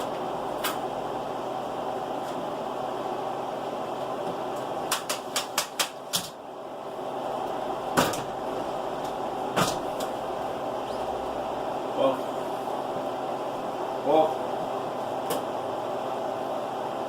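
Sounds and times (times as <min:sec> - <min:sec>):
steady background hum: 0:00.0 - 0:17.0.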